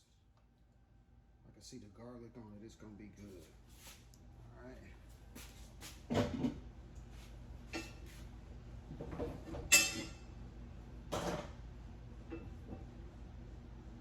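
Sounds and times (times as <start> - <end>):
utensils clinking against cookware: 9.7 - 10.2.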